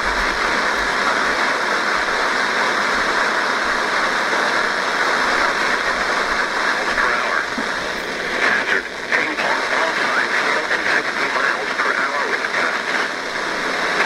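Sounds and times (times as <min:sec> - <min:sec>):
radio static hiss: 0:00.0 - 0:14.0
spoken alert: 0:06.8 - 0:13.1.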